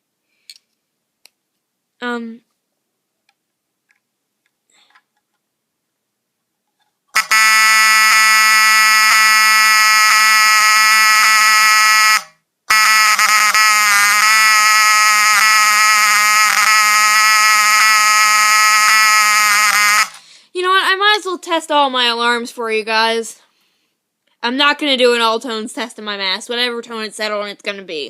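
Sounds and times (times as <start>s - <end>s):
fire alarm horn: 7.2s - 20.2s.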